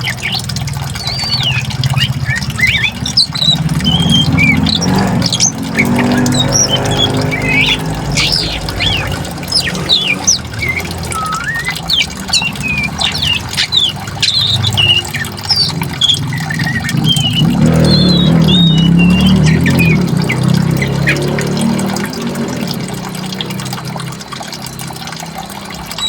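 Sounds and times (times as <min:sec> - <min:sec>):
birds chirping and whistling: 0:00.0 - 0:23.2
flowing water rushing: 0:00.0 - 0:26.0.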